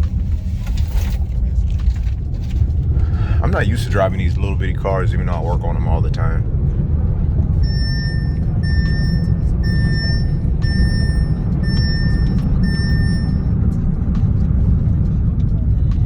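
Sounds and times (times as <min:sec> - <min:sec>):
engine and road rumble: 0:00.0 - 0:16.0
car warning chime beeping: 0:07.6 - 0:13.6.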